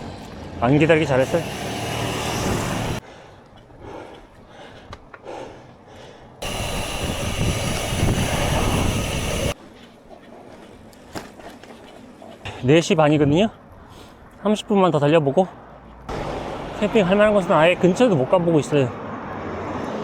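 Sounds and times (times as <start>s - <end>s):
wind rumbling on microphone: 6.4s - 9.6s.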